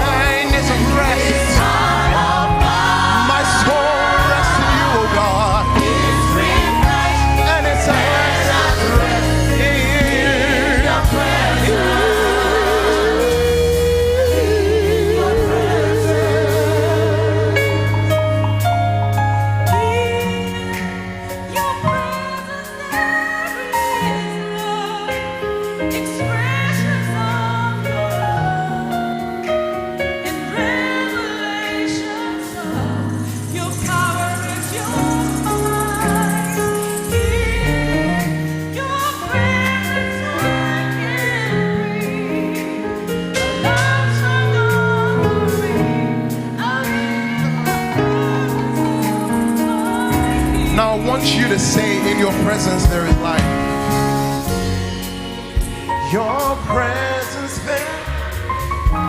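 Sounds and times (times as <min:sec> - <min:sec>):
voices singing with vibrato: 0:00.0 - 0:18.3, 0:30.5 - 0:42.4, 0:43.4 - 0:59.0
held chords and bass notes: 0:00.0 - 0:30.5, 0:32.5 - 0:59.0.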